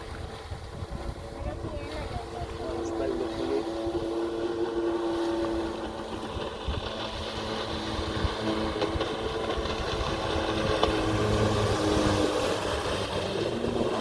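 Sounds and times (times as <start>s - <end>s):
jet ski engine running: 0.0s - 14.0s.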